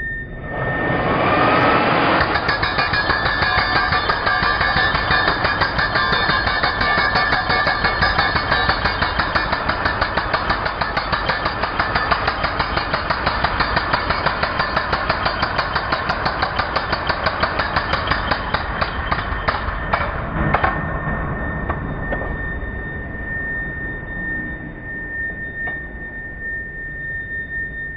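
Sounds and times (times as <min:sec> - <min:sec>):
steady motor whine: 0:00.0 - 0:16.8
demolition hammer pounding: 0:02.0 - 0:20.8.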